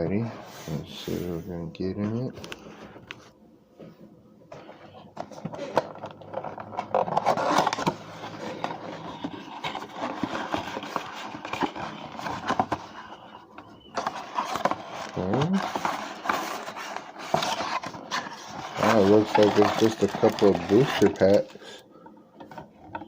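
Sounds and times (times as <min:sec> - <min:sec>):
cardboard box rustling: 0:05.2 - 0:21.4.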